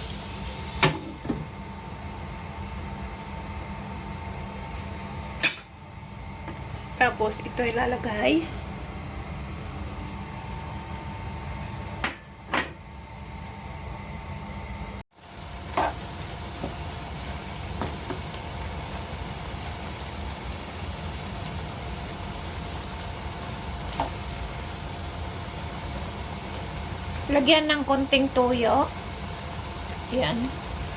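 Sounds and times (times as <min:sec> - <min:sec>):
food sizzling in a frying pan: 0:00.0 - 0:01.5, 0:15.1 - 0:30.9.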